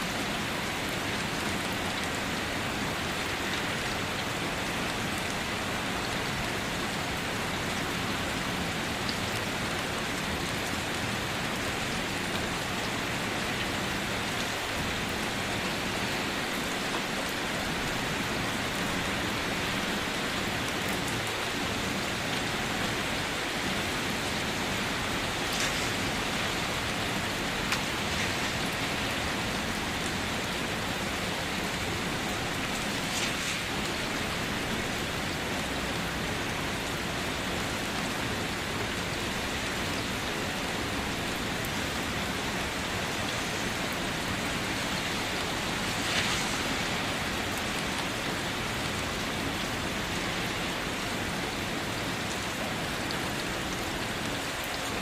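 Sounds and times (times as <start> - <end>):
louder rain splashes: 0.0 - 55.0
rain drumming on car roof: 8.5 - 37.5.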